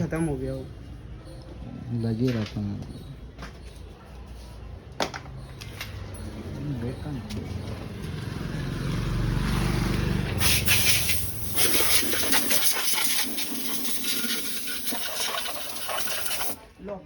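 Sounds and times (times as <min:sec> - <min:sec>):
loud rushing hiss: 0:10.4 - 0:16.6.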